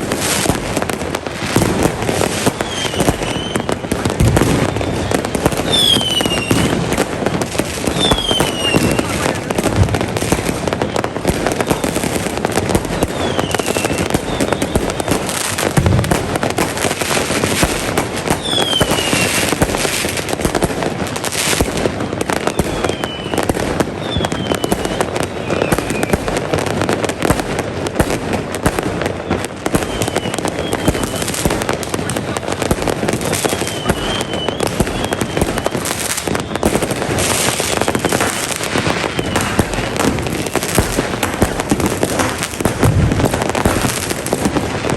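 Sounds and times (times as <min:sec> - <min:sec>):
falling firework whistles: 0:00.0 - 0:44.9
fireworks bangs and pops: 0:00.0 - 0:44.9.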